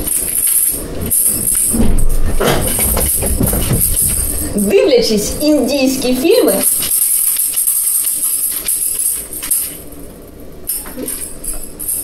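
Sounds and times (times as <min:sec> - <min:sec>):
tambourine jingling: 0:00.0 - 0:05.3.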